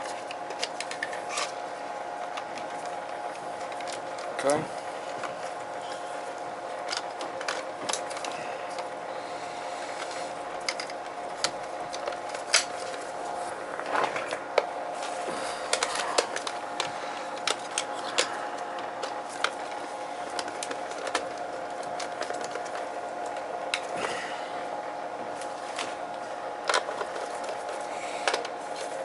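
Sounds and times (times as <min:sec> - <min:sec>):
small clicks of handling wires and tools: 0:00.0 - 0:01.6, 0:02.2 - 0:09.0, 0:10.0 - 0:24.2, 0:25.2 - 0:29.0
steady hum: 0:00.0 - 0:29.0.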